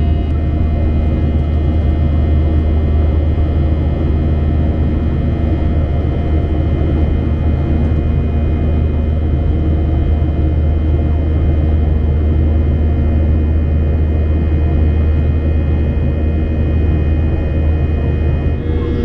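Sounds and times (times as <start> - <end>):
faint high whine: 0.0 - 0.4, 18.3 - 19.0.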